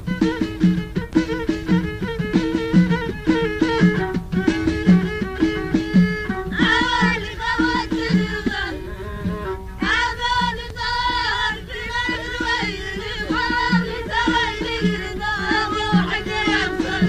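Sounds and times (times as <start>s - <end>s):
steady drum beat: 0.0s - 8.7s, 9.3s - 17.0s
person singing: 6.6s - 17.0s.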